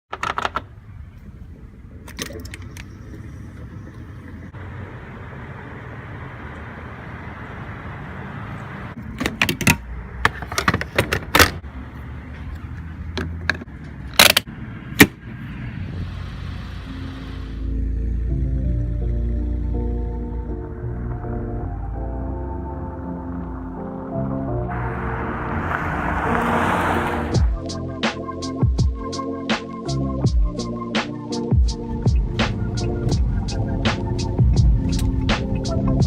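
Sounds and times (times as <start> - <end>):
sharp clicks and clunks: 0.1 - 0.7, 9.0 - 11.6, 13.1 - 15.2.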